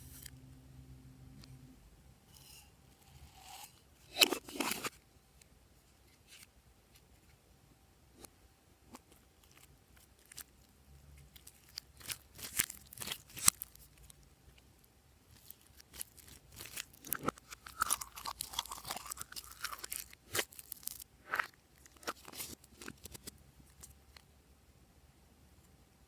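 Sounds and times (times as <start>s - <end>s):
slime clicking and crackling: 11.3s - 14.2s, 15.4s - 21.1s.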